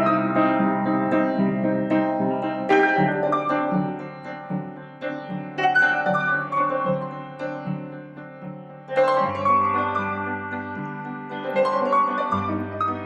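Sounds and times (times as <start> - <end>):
gentle harp-like melody: 0.0 - 4.7, 9.0 - 13.0.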